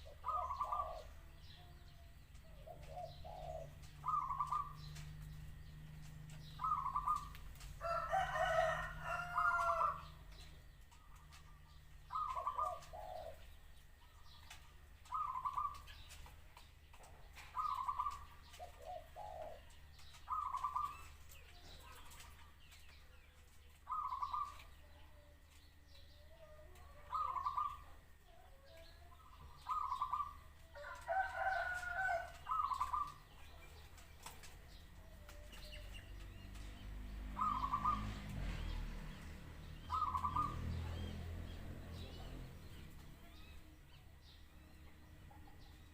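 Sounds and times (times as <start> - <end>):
dove cooing: 0.0 - 5.3, 6.4 - 10.1, 11.0 - 16.1, 17.4 - 22.3, 23.9 - 24.8, 26.4 - 33.6, 37.3 - 38.8, 39.8 - 41.1.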